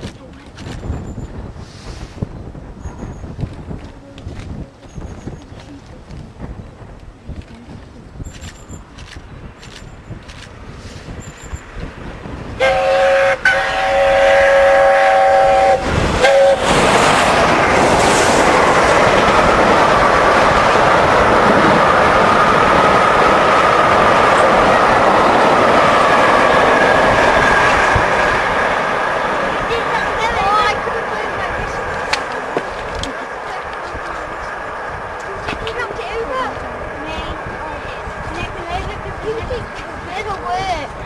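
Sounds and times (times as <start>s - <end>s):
train passing over rails: 0.0s - 41.0s
steam locomotive whistle: 12.6s - 16.9s.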